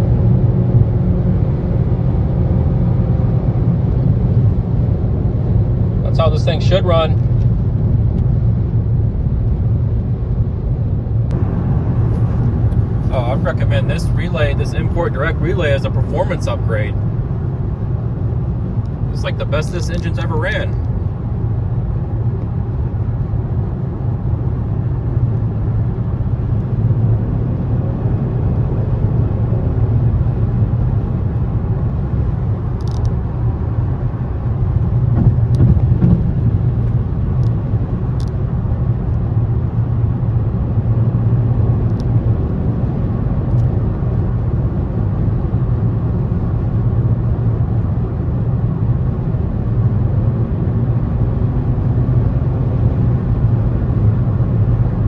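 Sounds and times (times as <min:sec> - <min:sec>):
car engine rumble: 0:00.0 - 0:55.0
road noise: 0:00.0 - 0:55.0.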